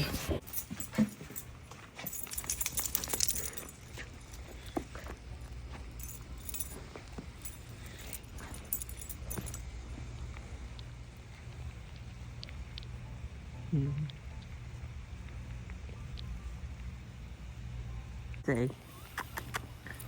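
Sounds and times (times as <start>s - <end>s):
steady low hum: 0.0s - 20.0s
small metal objects clinking: 0.4s - 9.8s.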